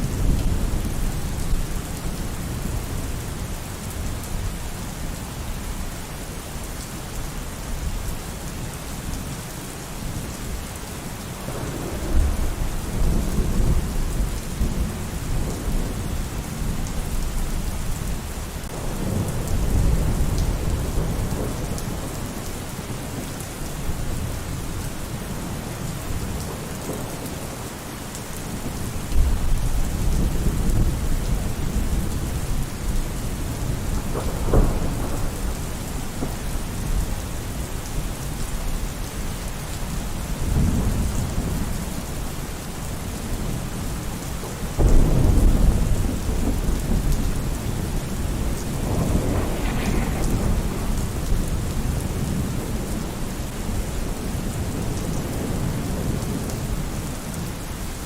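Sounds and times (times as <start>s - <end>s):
heavy rain: 0.0s - 58.0s
rolling thunder: 11.3s - 17.9s, 18.6s - 27.5s, 28.5s - 37.8s, 44.7s - 56.9s.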